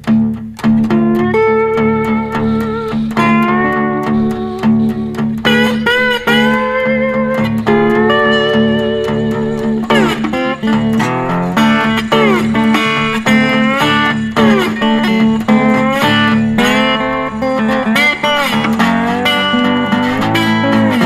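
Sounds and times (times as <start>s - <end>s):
slide guitar: 0.0s - 21.0s
steady bass note: 19.0s - 21.0s.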